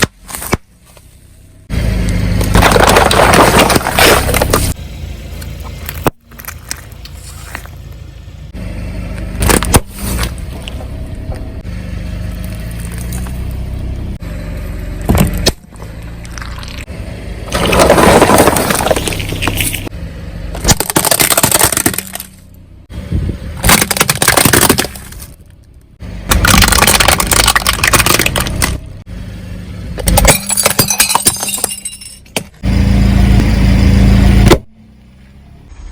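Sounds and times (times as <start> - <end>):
objects cracking and crunching: 2.4 - 4.8, 5.6 - 7.8, 17.5 - 19.9, 20.6 - 22.4, 23.6 - 25.6, 26.3 - 28.8.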